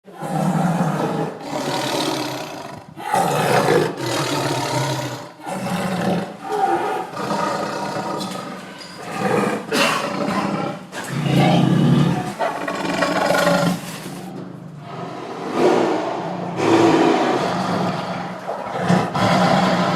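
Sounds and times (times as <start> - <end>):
tiger roaring and snarling: 0.1 - 19.9.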